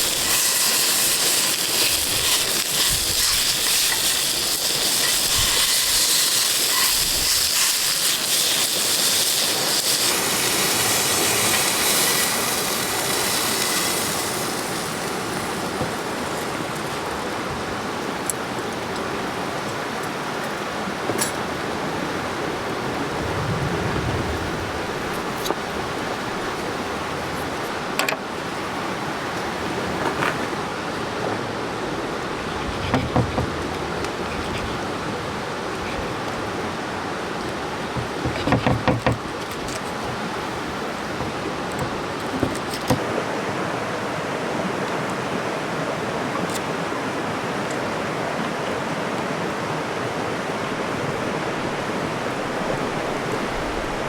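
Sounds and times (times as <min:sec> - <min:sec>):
meat sizzling on a hot pan: 0:00.0 - 0:16.9
sharp crackles: 0:00.0 - 0:17.0.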